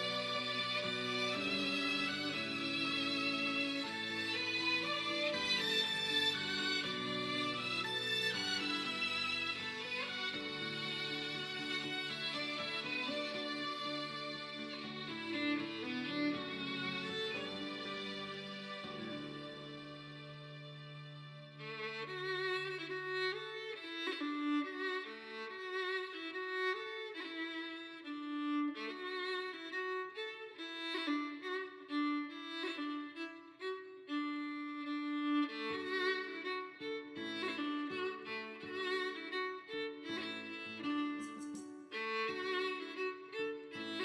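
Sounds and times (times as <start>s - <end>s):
violin melody: 0.0s - 44.0s.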